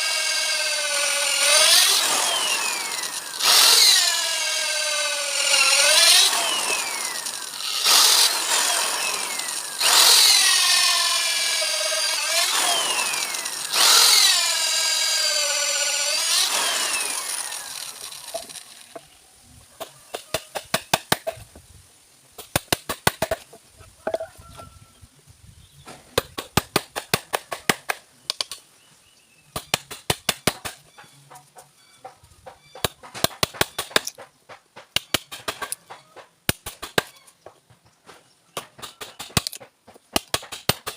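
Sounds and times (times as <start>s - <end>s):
electric power tool cutting wood: 0.0s - 19.0s.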